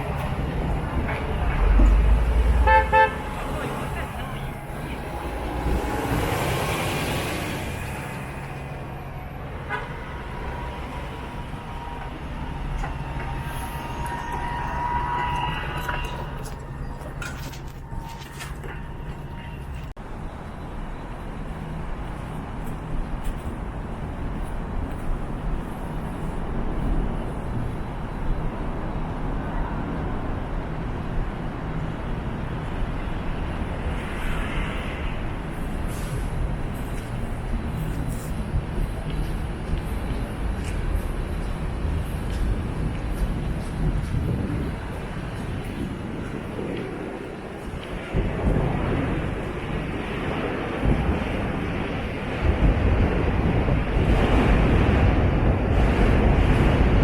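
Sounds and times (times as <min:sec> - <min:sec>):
large vehicle engine humming: 0:00.0 - 0:29.2
street traffic: 0:00.0 - 0:57.0.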